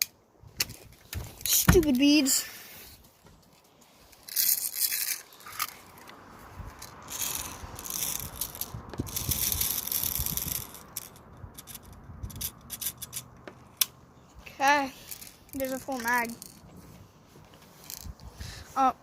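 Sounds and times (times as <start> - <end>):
plastic pellets rattling: 4.2 - 6.0, 6.8 - 13.2, 14.9 - 16.6.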